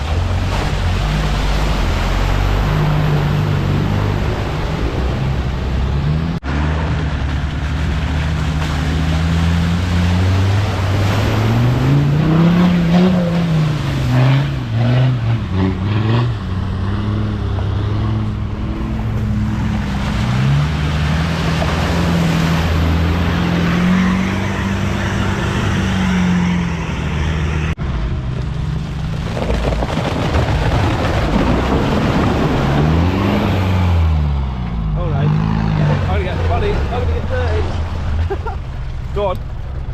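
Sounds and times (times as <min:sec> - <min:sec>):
off-road vehicle engine revving: 0:00.0 - 0:27.8, 0:30.3 - 0:39.9.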